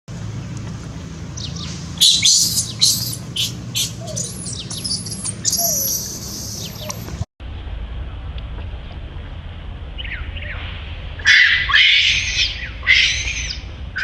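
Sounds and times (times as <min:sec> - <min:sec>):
baby monkey screaming: 0:01.4 - 0:07.2, 0:11.2 - 0:13.6.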